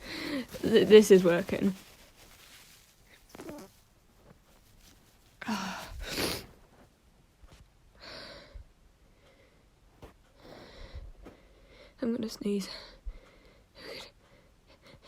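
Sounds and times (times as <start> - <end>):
woman gasping breaths: 0.0 - 0.6, 5.4 - 6.5.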